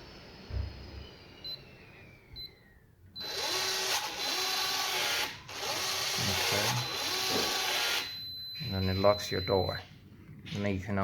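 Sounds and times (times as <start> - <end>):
lock motor whirring: 3.2 - 8.2
short high keypad beeps: 6.5 - 9.8.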